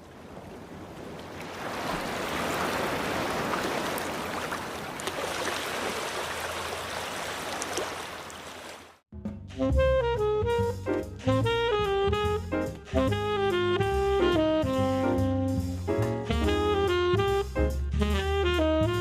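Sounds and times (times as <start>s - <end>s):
jazz with saxophone and drums: 9.5s - 19.0s.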